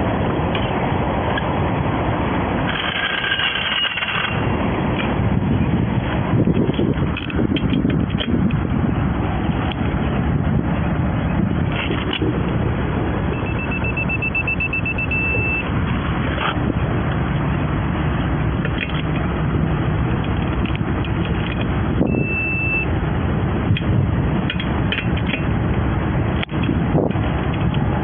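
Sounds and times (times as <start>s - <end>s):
roadside traffic: 0.0s - 28.0s
short high beeps: 13.3s - 15.7s, 22.1s - 22.9s.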